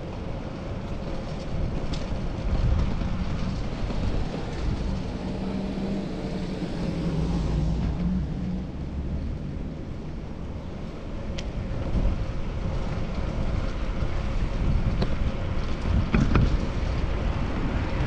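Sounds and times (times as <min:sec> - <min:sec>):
wind on camera microphone: 0:00.0 - 0:07.1, 0:11.3 - 0:18.0
road traffic rumble: 0:00.0 - 0:18.0
vehicle hum: 0:00.0 - 0:18.0.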